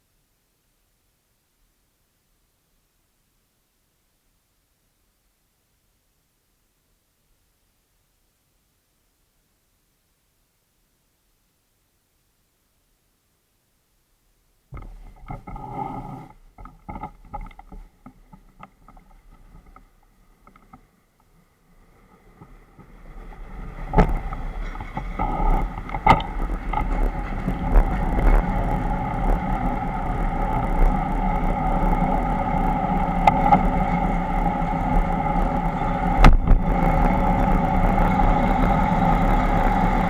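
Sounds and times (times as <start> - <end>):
diesel train engine droning: 21.4 - 40.0.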